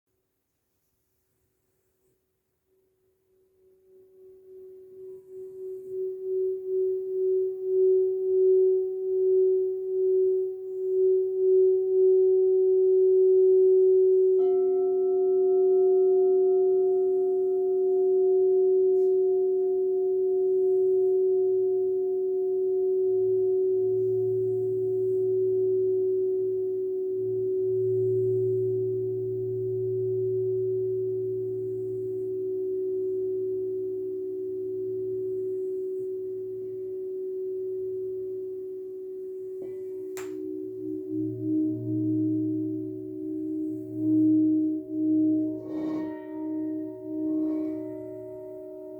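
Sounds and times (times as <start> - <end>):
crystal singing bowl tones: 3.3 - 48.9
singing bowl struck: 39.4 - 48.9.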